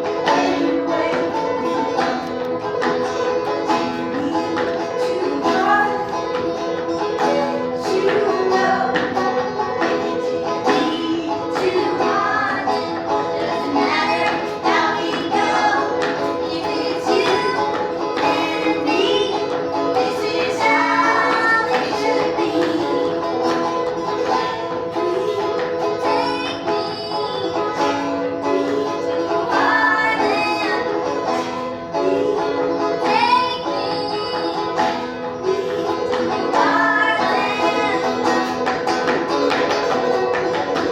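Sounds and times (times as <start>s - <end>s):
sharp regular taps: 0.0s - 31.8s, 32.4s - 40.9s
banjo melody: 0.0s - 40.9s.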